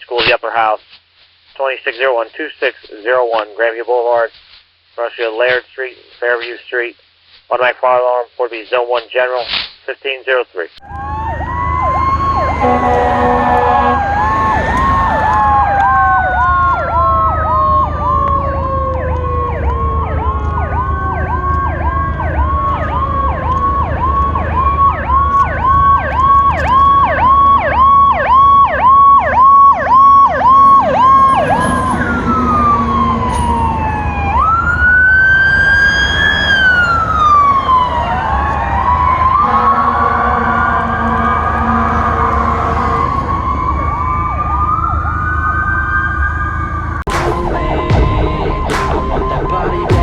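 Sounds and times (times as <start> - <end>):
siren wailing: 10.8 - 50.0
siren yelping: 10.8 - 50.0
low rumble: 47.1 - 50.0.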